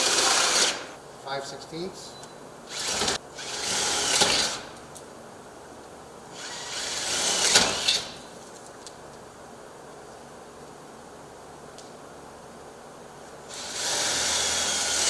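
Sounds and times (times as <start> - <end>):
power drill boring through door: 0.0 - 0.9, 2.7 - 4.7, 6.3 - 8.2, 13.5 - 15.0.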